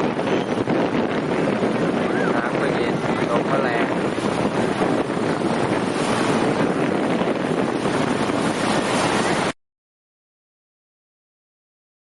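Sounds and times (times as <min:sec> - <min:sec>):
sea waves: 0:00.0 - 0:09.6
wind buffeting microphone: 0:00.0 - 0:09.6.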